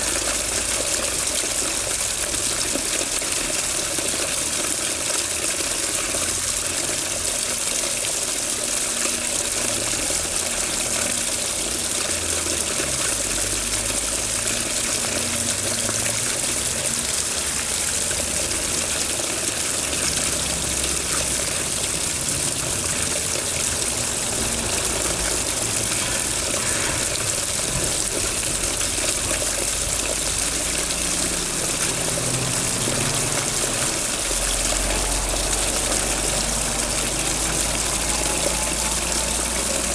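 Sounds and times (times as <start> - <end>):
water rushing and splashing: 0.0 - 39.9
low rumbles: 20.9 - 31.1.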